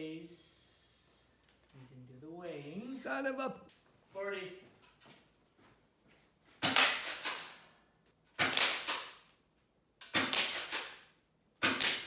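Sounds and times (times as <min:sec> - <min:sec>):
airsoft gun shots: 0:06.6 - 0:07.6, 0:08.4 - 0:09.2, 0:10.0 - 0:11.0, 0:11.6 - 0:12.0.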